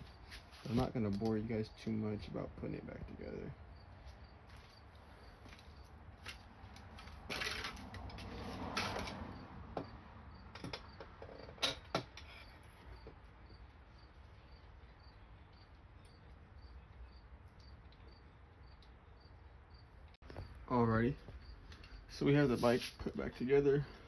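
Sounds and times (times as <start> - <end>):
cricket chirps: 1.4 - 6.4, 8.7 - 20.6
metal parts scraping and clinking: 7.0 - 9.2.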